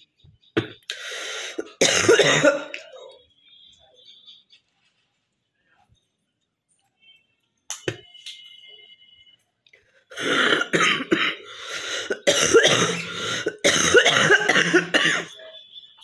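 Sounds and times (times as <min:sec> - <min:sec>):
woman coughing: 0:01.5 - 0:03.2, 0:10.2 - 0:15.6
woman clearing her throat: 0:10.2 - 0:11.4.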